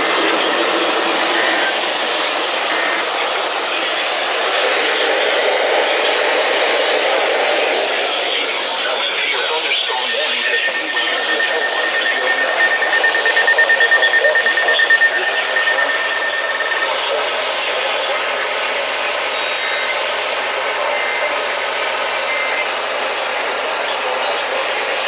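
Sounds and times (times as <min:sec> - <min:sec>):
pulsing electronic alert tone: 0:09.8 - 0:16.9.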